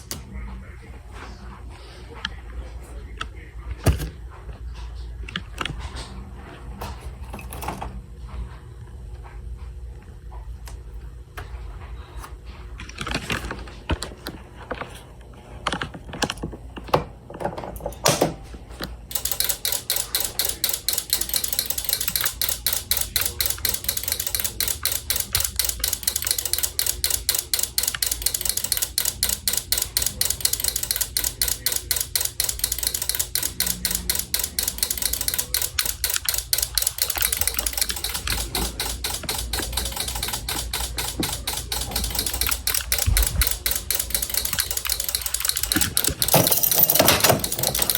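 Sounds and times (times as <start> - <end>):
rapid even clicking: 19.1 - 47.9
knocks and clicks: 31.9 - 47.9.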